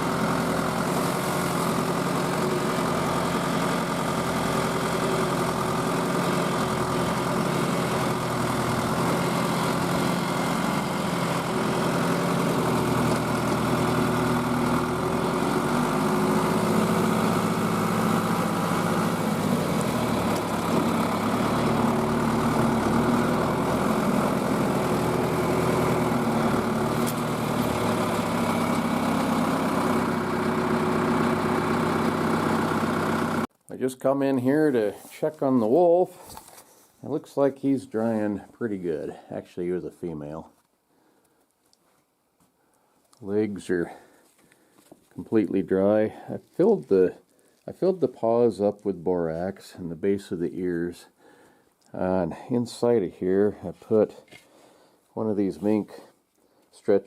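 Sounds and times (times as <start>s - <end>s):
vehicle engine running: 0.0s - 33.5s.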